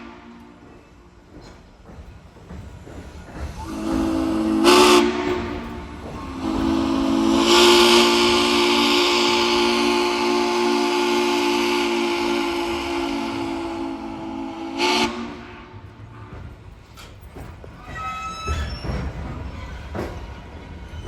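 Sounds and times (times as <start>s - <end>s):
steam hissing: 0.0s - 21.0s
steam locomotive whistle: 3.6s - 16.4s.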